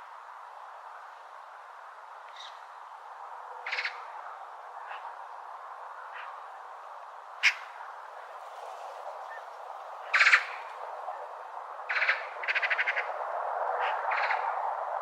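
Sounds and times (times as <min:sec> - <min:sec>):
rattling corvid calls: 0:10.0 - 0:10.6, 0:11.9 - 0:13.1.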